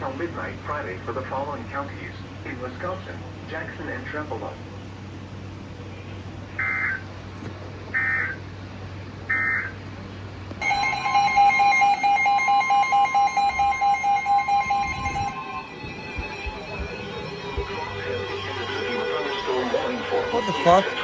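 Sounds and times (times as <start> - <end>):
two-tone attention signal: 10.6 - 21.0
warbling digital data tones: 10.6 - 21.0.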